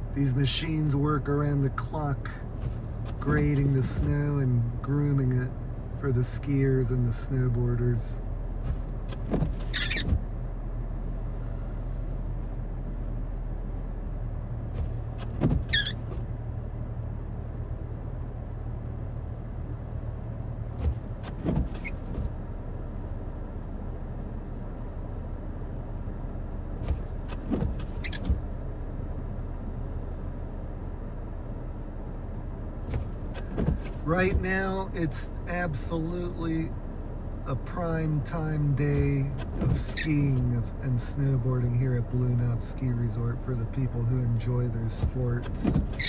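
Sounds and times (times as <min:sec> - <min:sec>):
vehicle engine idling: 0:00.0 - 0:46.0
short sharp squeaks and clicks: 0:09.1 - 0:10.3, 0:15.1 - 0:16.2, 0:20.8 - 0:22.2, 0:26.8 - 0:28.5, 0:39.4 - 0:40.4, 0:45.4 - 0:46.0.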